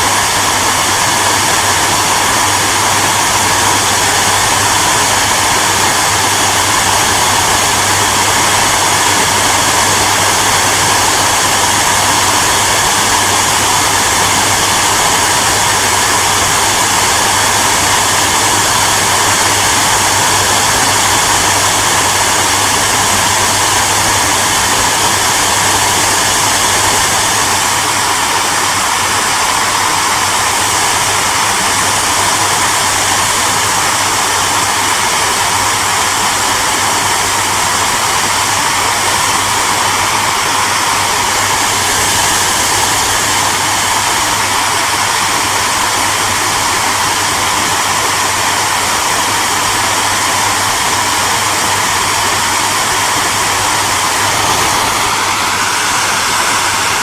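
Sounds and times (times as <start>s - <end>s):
hair dryer running: 0.0s - 57.0s.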